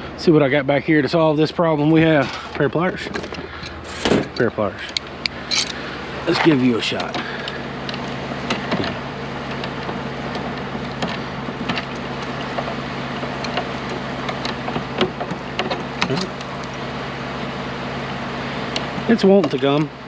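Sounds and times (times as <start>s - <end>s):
steady low hum: 0.0s - 20.0s
chain clinking: 5.5s - 17.0s, 18.3s - 19.9s.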